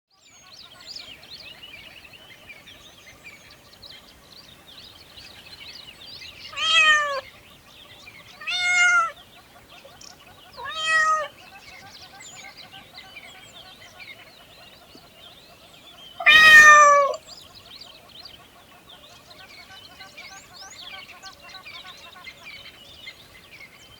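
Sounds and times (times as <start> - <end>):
birds chirping: 0.2 - 23.9
cat meowing: 6.6 - 7.2, 8.4 - 9.1, 10.6 - 11.3, 16.2 - 17.2.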